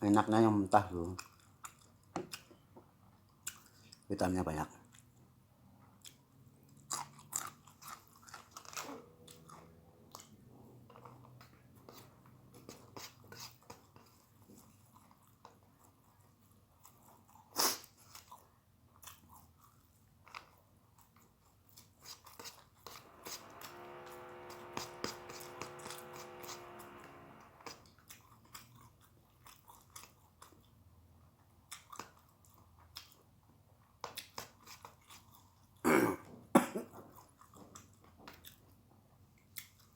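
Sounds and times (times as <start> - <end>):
chewing and crunching food: 0.9 - 4.1, 4.8 - 22.8, 28.1 - 35.8, 36.9 - 39.9
steady pitched hum: 22.9 - 27.9.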